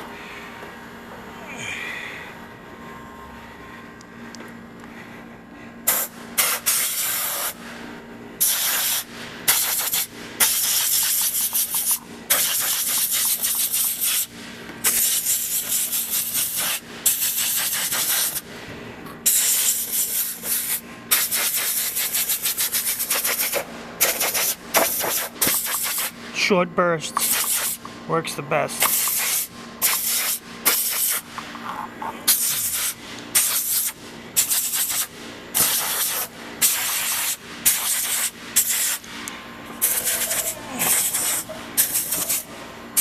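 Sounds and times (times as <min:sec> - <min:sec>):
compressed gas hissing in bursts: 0:05.8 - 0:07.6, 0:08.4 - 0:18.5, 0:19.2 - 0:26.2, 0:27.2 - 0:27.9, 0:28.8 - 0:31.4, 0:32.2 - 0:39.1, 0:39.8 - 0:43.0.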